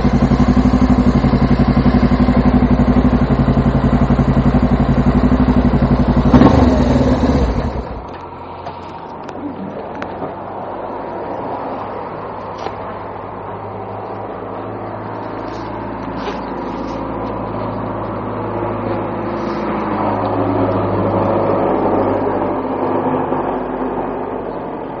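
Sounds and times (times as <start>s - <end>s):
motorcycle engine running: 0.0s - 8.3s.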